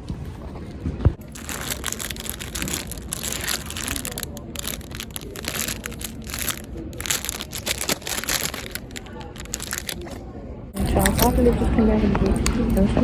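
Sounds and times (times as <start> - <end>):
rustling and scraping: 1.2 - 10.2.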